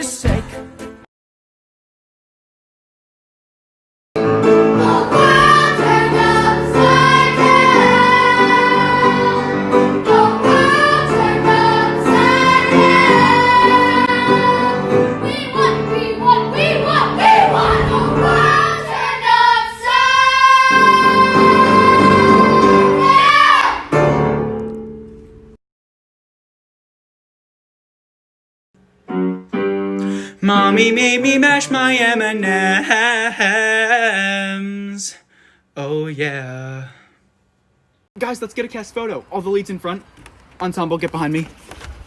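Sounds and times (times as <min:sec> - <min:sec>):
person singing long notes: 0:30.0 - 0:34.6.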